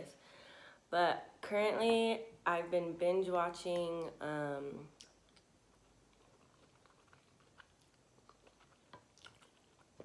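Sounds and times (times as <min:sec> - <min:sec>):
chewing with wet mouth clicks: 0:04.9 - 0:10.0.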